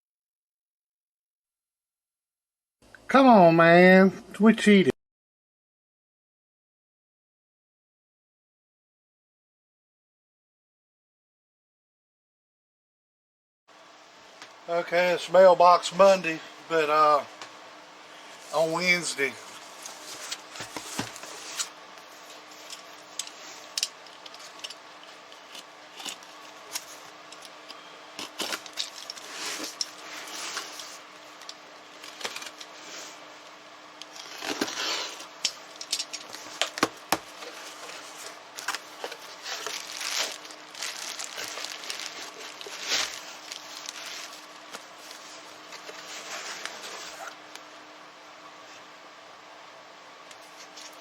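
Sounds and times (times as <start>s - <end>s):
faint hum: 13.7s - 51.0s
packaging tearing and rustling: 18.4s - 32.8s, 34.0s - 47.4s.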